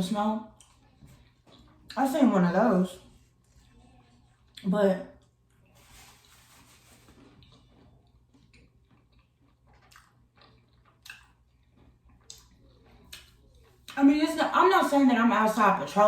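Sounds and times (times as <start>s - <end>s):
faint chewing: 0.5s - 2.1s, 3.0s - 14.0s.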